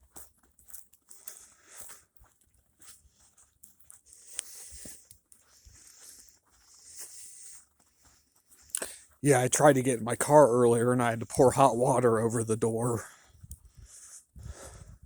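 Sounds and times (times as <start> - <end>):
footsteps crunching on snow: 0.0 - 10.8.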